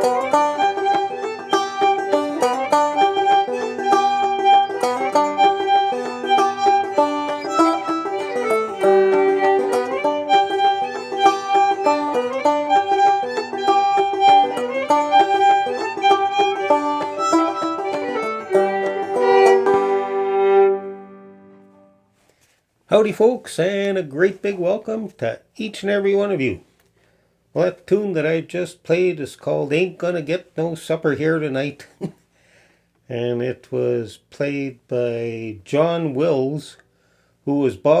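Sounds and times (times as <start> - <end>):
banjo: 0.0 - 21.8
fiddle: 0.0 - 22.0.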